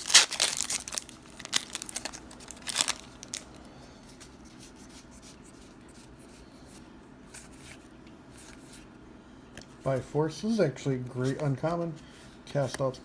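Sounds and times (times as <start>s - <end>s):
wrapper crinkling: 0.0s - 3.6s.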